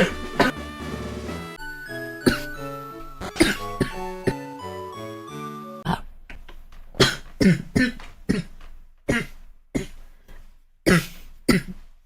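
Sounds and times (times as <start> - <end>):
woman coughing: 0.0 - 0.6, 2.2 - 2.6, 3.2 - 4.4, 7.0 - 10.0.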